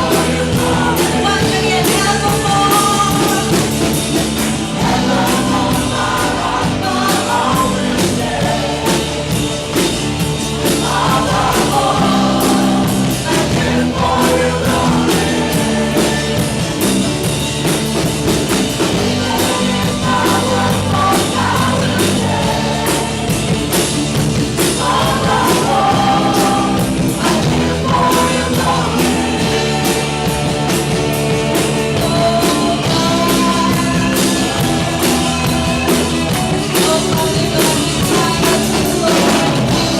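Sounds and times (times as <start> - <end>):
people singing: 0.0 - 39.9
rock band playing: 0.0 - 39.9
steady drum beat: 0.0 - 39.9.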